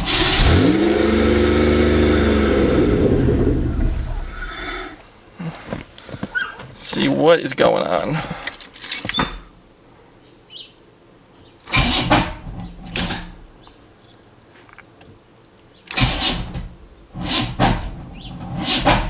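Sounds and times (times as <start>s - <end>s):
starter motor cranking engine: 0.0s - 4.6s, 15.9s - 17.8s.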